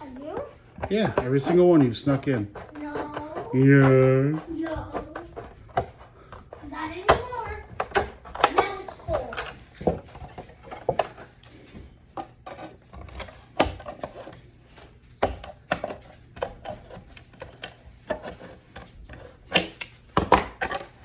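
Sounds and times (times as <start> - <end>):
plastic pieces knocking and clicking: 15.2 - 21.0.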